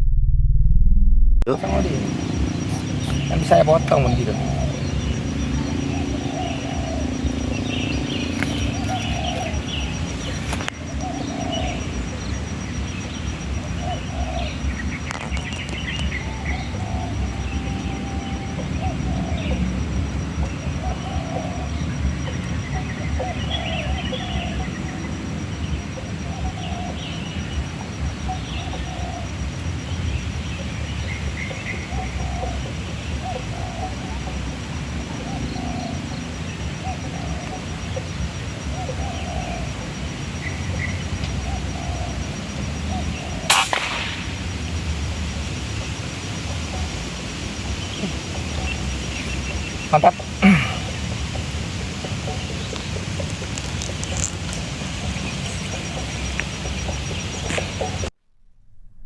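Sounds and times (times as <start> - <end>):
wind rumble on microphone: 0.0 - 43.5
birds calling faintly: 1.5 - 59.0
air rifle shot: 43.5 - 44.6.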